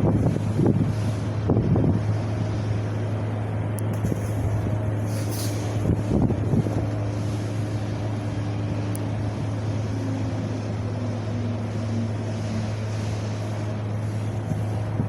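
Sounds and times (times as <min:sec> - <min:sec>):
wind blowing: 0:00.0 - 0:10.0
constant low hum: 0:00.0 - 0:15.0.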